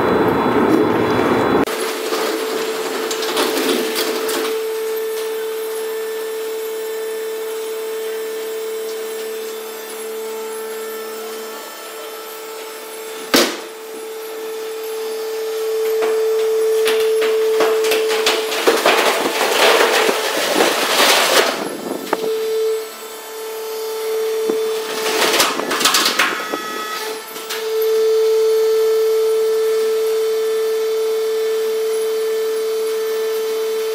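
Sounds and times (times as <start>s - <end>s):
machine motor hum: 0.0s - 30.6s
scraping and cutting rubber: 1.7s - 22.8s.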